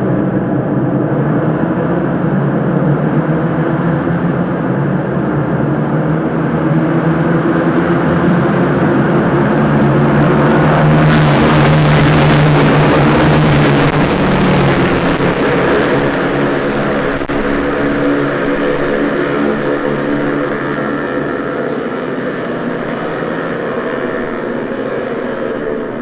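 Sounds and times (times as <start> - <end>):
racing motorcycle engines revving: 5.4 - 25.9.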